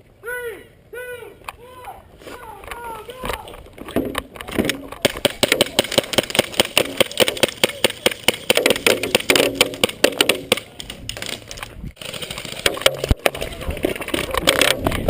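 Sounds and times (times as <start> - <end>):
pellets smacking into targets: 3.1 - 15.0
airsoft guns firing: 4.0 - 10.7.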